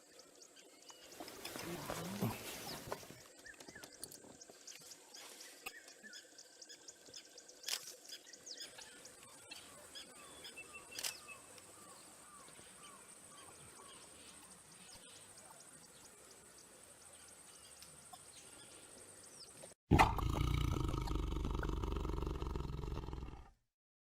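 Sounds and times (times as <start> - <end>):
birds chirping faintly: 0.0 - 23.5.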